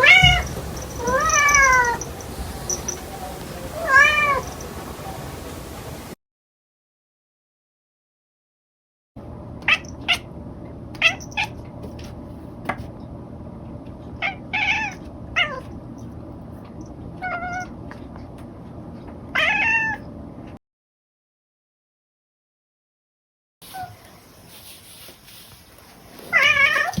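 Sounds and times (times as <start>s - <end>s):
cat meowing: 0.0s - 5.1s, 19.4s - 20.0s, 26.3s - 27.0s.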